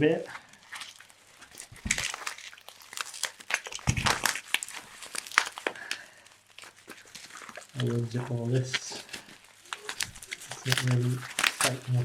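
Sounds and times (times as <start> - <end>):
bubble wrap crinkling: 0.0 - 12.0.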